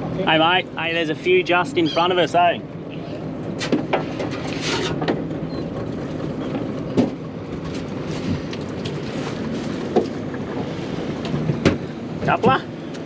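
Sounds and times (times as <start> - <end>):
outboard motor running: 0.0 - 13.0
knocks and clatters on hull: 3.6 - 12.6.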